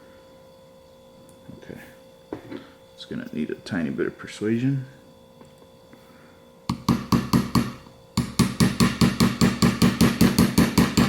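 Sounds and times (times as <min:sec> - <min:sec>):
hammer tapping metal punch: 0:06.7 - 0:11.0.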